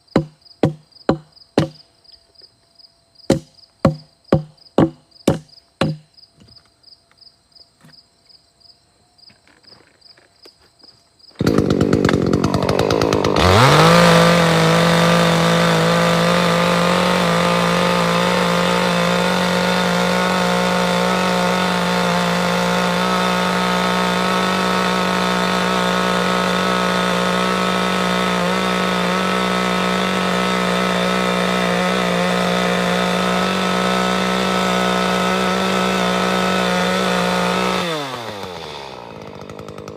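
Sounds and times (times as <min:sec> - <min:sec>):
insects chirping: 0:00.0 - 0:11.4
chainsaw revving: 0:11.4 - 0:39.9.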